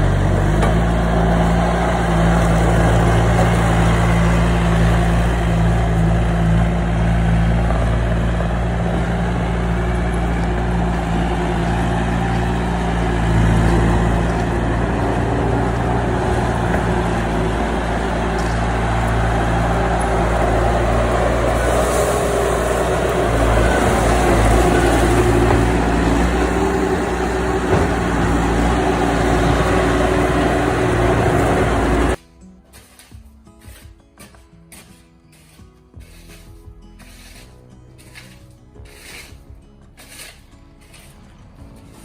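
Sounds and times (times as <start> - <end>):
engine running steadily: 0.0 - 32.2.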